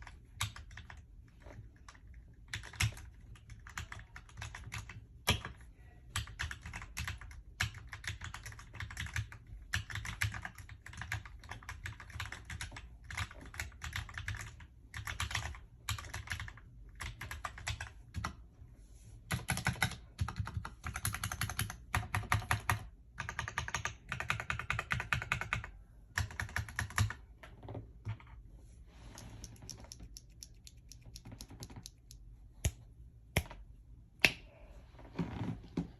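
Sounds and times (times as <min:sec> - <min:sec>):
mechanical keyboard typing: 0:00.0 - 0:05.6, 0:06.2 - 0:18.4, 0:19.3 - 0:27.3, 0:29.2 - 0:32.8.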